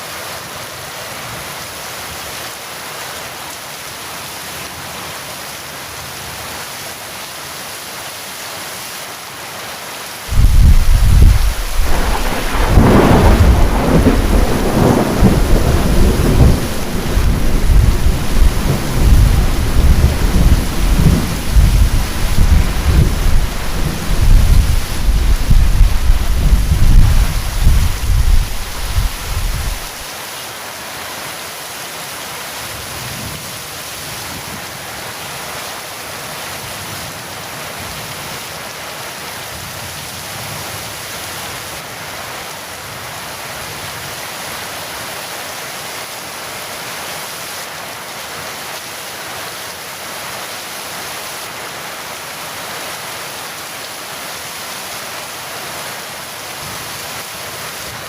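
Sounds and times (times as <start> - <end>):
heavy rain hissing: 0.0 - 58.0
thunder rumble: 10.3 - 30.0.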